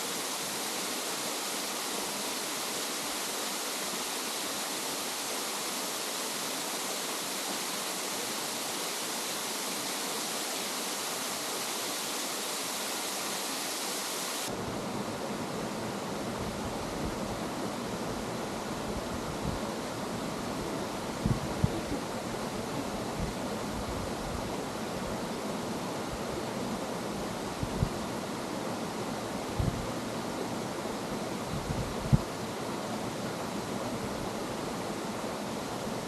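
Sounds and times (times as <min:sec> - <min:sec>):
waterfall rushing: 0:00.0 - 0:14.6.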